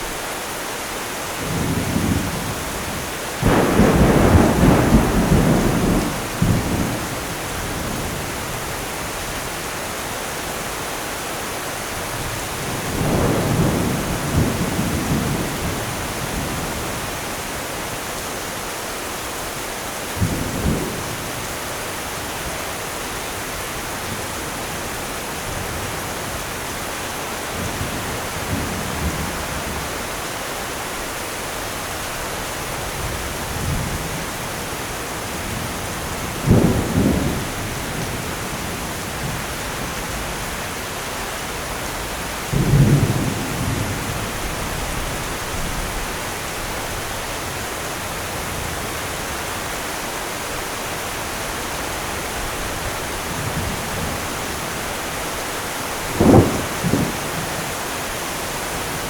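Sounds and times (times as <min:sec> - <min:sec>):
heavy rain: 0:00.0 - 0:59.0
thunder rumbling: 0:01.4 - 0:09.3, 0:12.0 - 0:17.7, 0:32.0 - 0:40.8, 0:41.4 - 0:49.3, 0:51.2 - 0:59.0.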